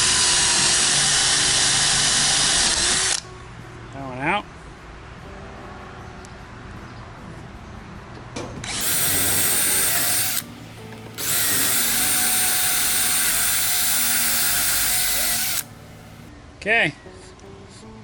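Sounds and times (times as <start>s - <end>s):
electric drill drilling rivets: 8.7s - 16.3s.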